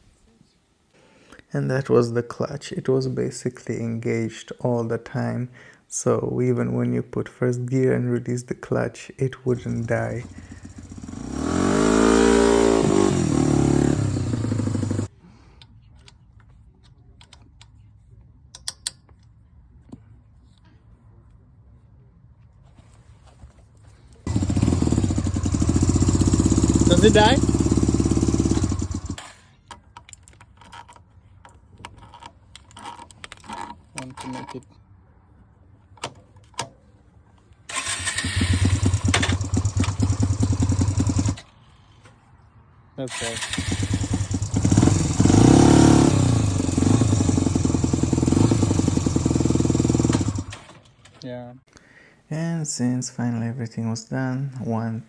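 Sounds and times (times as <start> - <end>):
motorcycle engine revving: 9.6 - 15.1, 24.3 - 29.3, 37.7 - 41.4, 43.1 - 50.7.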